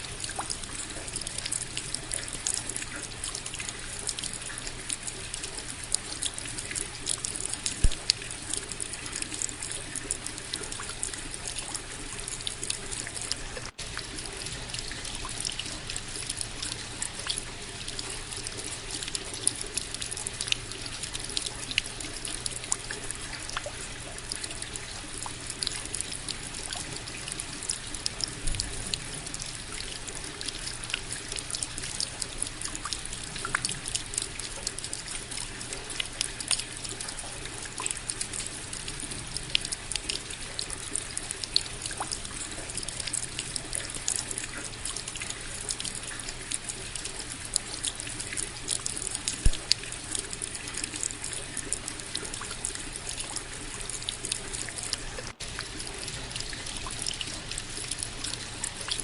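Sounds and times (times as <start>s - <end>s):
rain drops ticking: 0.0s - 59.0s
running water trickle: 0.0s - 59.0s.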